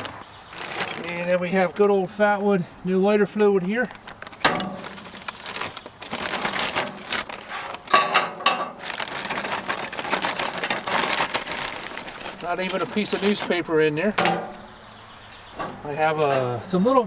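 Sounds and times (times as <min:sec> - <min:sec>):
kindling sticks rustling and knocking: 0:03.8 - 0:16.6.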